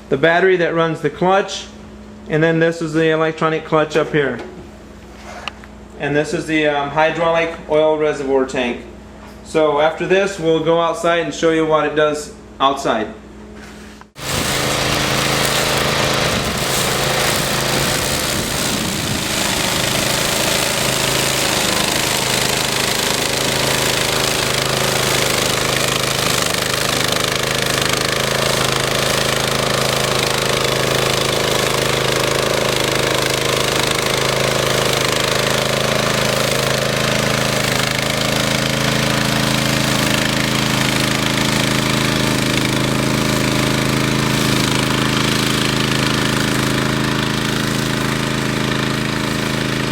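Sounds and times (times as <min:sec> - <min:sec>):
brush mower engine running: 0:14.2 - 0:49.9.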